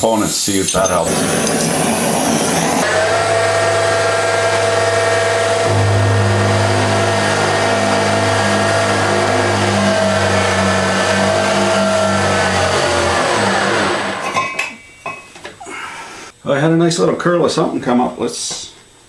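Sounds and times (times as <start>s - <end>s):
milling machine spindle running: 0.6s - 14.4s
metal friction grinding: 0.6s - 15.2s.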